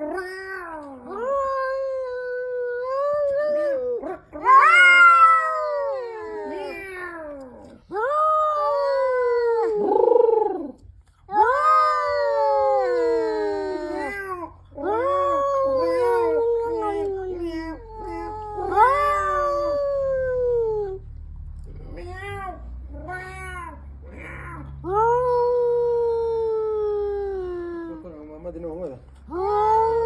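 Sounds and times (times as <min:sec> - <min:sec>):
cats yowling: 0:00.0 - 0:21.2, 0:21.8 - 0:28.1.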